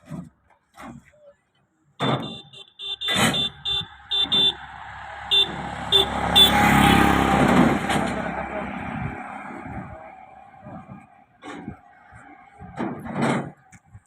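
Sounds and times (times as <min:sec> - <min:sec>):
vehicle horn beeping: 0:02.0 - 0:04.6, 0:05.3 - 0:07.3.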